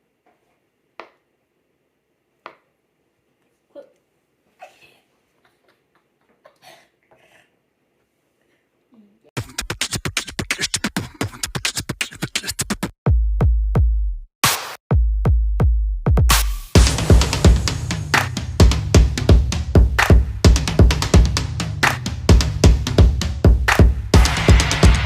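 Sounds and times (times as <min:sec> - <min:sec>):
electronic beat music: 0:09.4 - 0:25.0.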